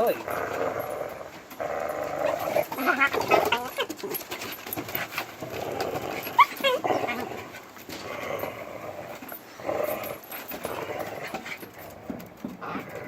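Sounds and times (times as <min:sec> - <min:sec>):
dog whining and yipping: 0:06.1 - 0:07.2
dog yelping: 0:06.2 - 0:07.2.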